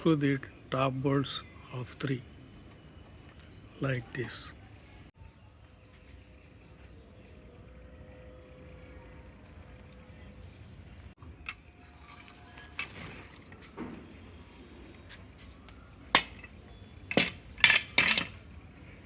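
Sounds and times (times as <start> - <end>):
wrench clinking on metal: 15.9 - 18.6.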